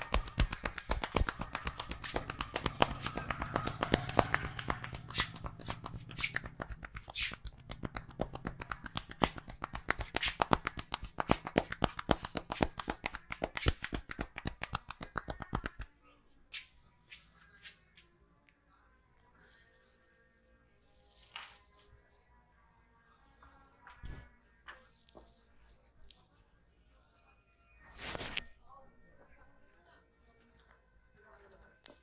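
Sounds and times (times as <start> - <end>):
hands clapping on head: 0.0 - 15.9.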